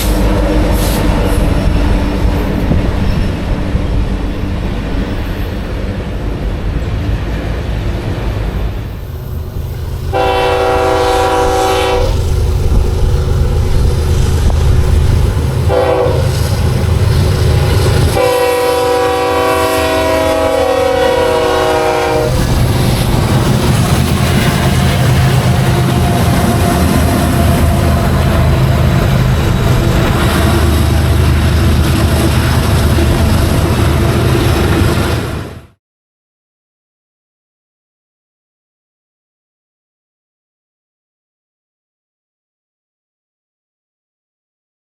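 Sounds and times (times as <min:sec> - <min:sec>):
passing train rumble: 0:00.0 - 0:35.8
locomotive air horn blasts: 0:10.1 - 0:12.3, 0:15.6 - 0:16.4, 0:18.1 - 0:22.4.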